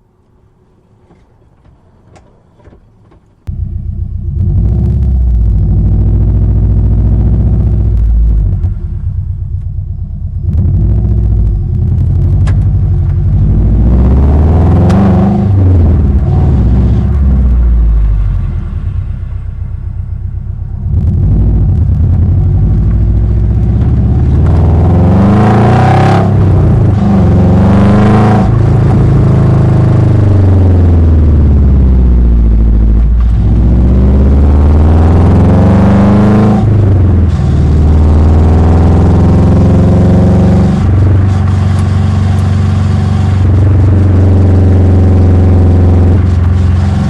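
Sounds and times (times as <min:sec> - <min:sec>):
sharp clunking knocks: 0:01.0 - 0:03.5
car engine accelerating: 0:01.7 - 0:47.0.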